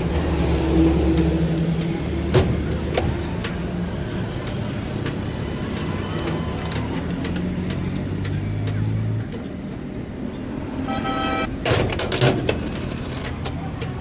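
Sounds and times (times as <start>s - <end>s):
traffic engine hum: 0.0s - 14.0s
car horn toot: 10.8s - 11.6s.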